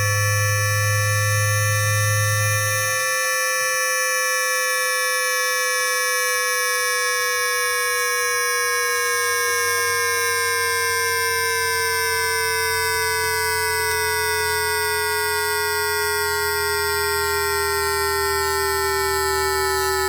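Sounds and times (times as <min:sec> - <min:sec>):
low hum: 0:00.0 - 0:03.0.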